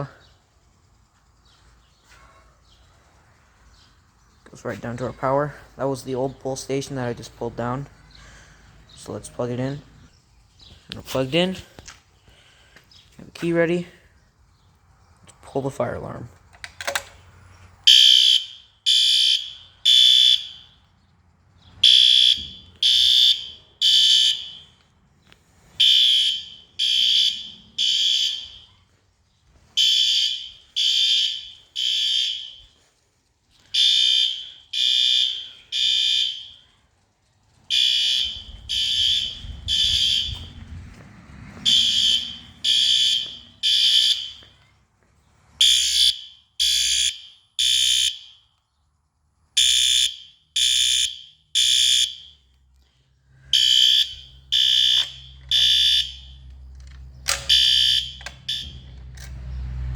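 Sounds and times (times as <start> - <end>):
high-pitched alarm horn blasts: 17.9 - 20.8, 21.8 - 24.8, 25.8 - 28.9, 29.7 - 32.9, 33.7 - 36.7, 37.7 - 40.7, 41.6 - 44.5, 45.6 - 48.4, 49.6 - 52.5, 53.5 - 56.4, 57.5 - 58.9.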